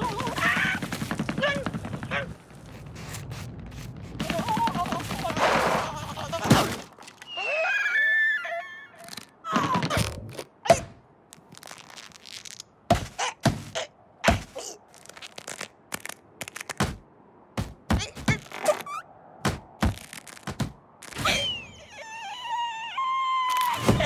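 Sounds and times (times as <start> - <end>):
squeaky falling cries: 7.2 - 10.0, 21.1 - 24.0
cartoon knocks and thuds: 12.9 - 14.6, 16.8 - 18.5, 19.4 - 20.8.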